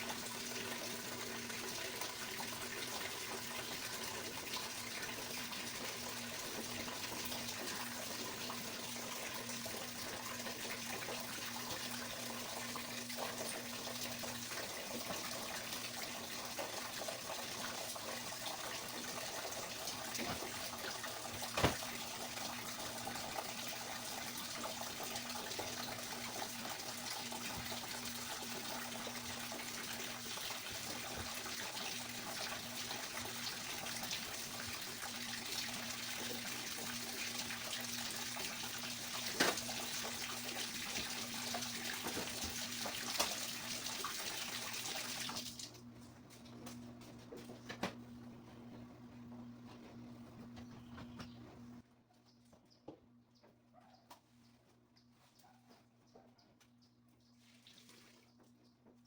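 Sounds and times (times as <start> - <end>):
water running from a tap: 0.0 - 45.8.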